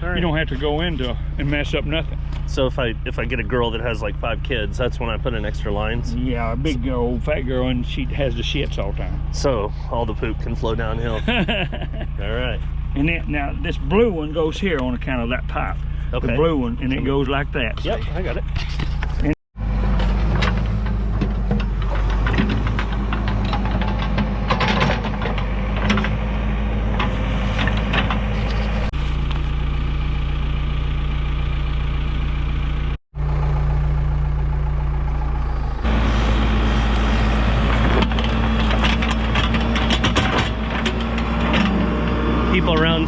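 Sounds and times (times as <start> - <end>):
backhoe engine running: 0.0 - 43.0
machine clunks and rattles: 19.9 - 28.8, 37.5 - 42.9.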